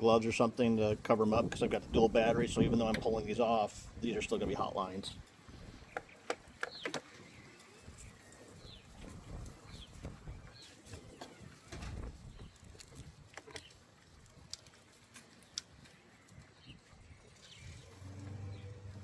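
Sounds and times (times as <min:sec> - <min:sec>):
faint birdsong chirps: 0:04.0 - 0:12.8, 0:15.2 - 0:19.0.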